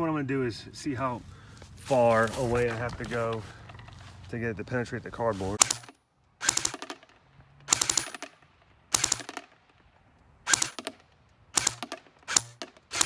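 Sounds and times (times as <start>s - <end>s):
airsoft rifle firing bursts: 5.6s - 9.6s, 10.4s - 13.0s.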